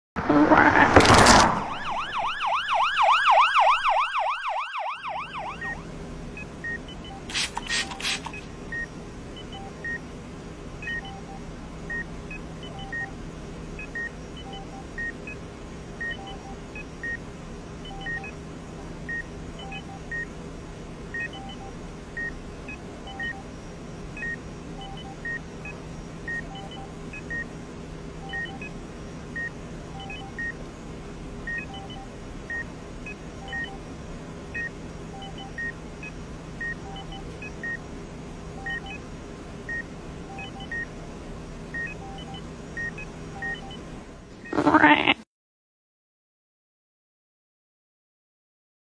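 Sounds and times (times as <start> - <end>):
warbling electronic siren tone: 1.6 - 5.9
short electronic beeps: 6.7 - 10.0, 17.9 - 18.3, 33.4 - 33.8, 38.6 - 39.0.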